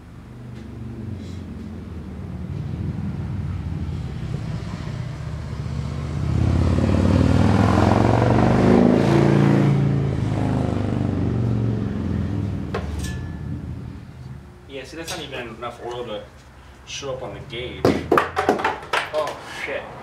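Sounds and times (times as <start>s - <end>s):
vehicle engine passing by: 0.0s - 15.0s.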